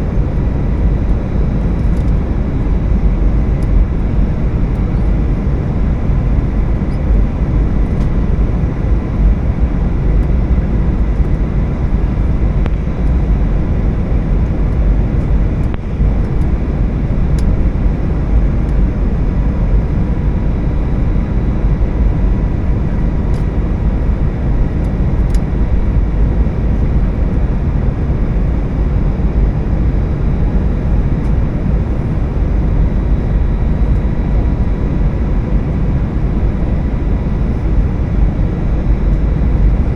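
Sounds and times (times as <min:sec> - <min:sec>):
aircraft cabin engine rumble: 0:00.0 - 0:39.9.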